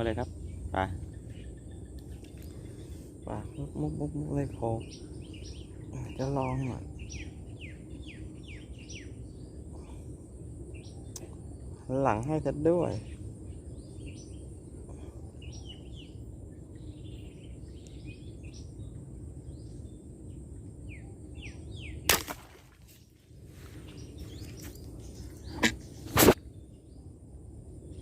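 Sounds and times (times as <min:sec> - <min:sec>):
small birds chirping: 0:00.0 - 0:27.1
low outdoor hiss: 0:00.0 - 0:28.0
sharp snap: 0:22.1 - 0:22.6, 0:25.6 - 0:26.4.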